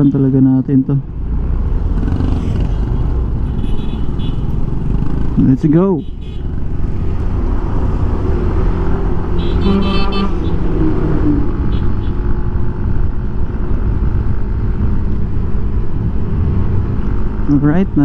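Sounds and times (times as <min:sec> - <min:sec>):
motorcycle engine: 0:01.0 - 0:17.6
vehicle horn: 0:03.4 - 0:04.5, 0:06.0 - 0:06.5, 0:09.3 - 0:10.7, 0:11.6 - 0:12.2
wind rumble: 0:06.0 - 0:18.0.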